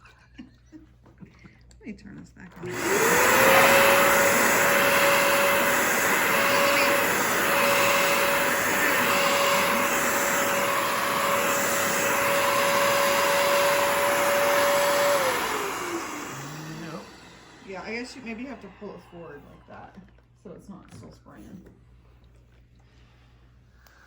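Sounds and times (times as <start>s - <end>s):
suction rushing: 2.6s - 18.5s
carpet cleaner motor whine: 2.6s - 20.0s.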